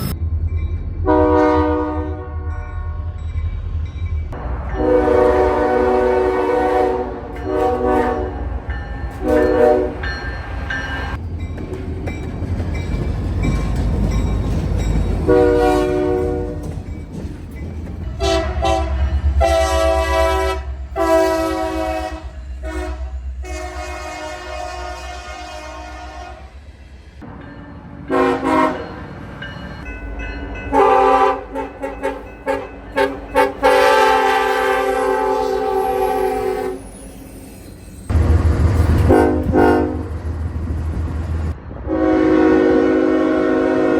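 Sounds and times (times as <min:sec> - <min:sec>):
low train rumble: 0:00.0 - 0:43.9
locomotive air horn chords: 0:01.0 - 0:02.5, 0:04.4 - 0:08.5, 0:09.2 - 0:10.0, 0:15.2 - 0:16.7, 0:18.2 - 0:26.6, 0:28.1 - 0:28.9, 0:30.7 - 0:36.8, 0:38.9 - 0:40.2, 0:41.9 - 0:43.9.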